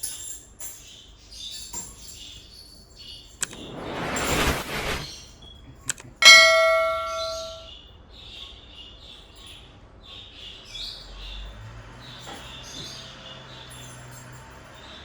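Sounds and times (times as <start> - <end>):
metallic clang ringing: 6.2 - 7.7
small birds chirping: 7.2 - 15.0.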